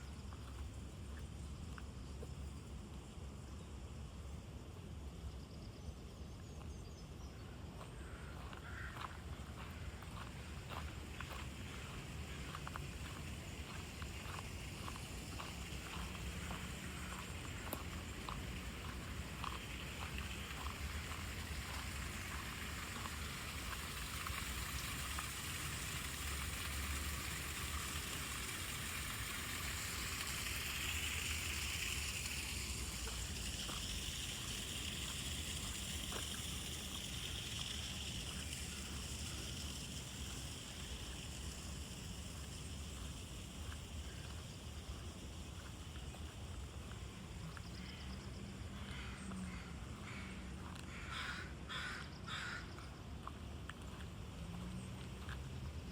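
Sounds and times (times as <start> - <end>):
running water rushing: 9.4 - 48.7.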